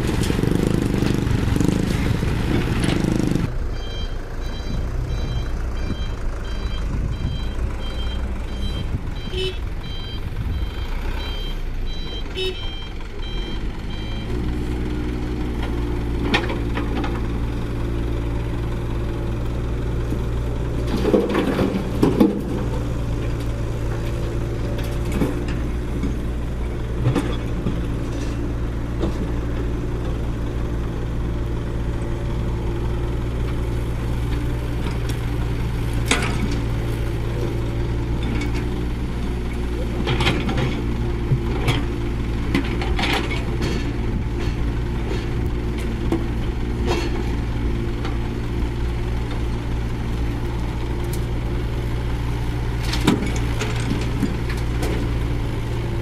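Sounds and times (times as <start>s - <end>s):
diesel engine running: 0.0s - 56.0s
reversing alarm beeping: 3.7s - 14.4s.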